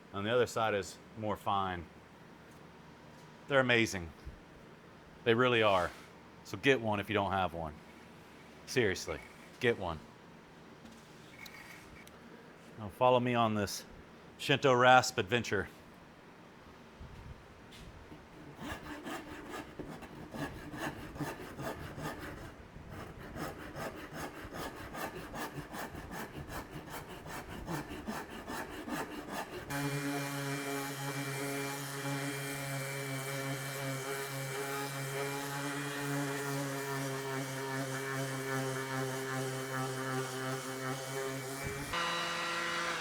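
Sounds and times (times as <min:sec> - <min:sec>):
rasp filing wood: 0:18.4 - 0:43.0.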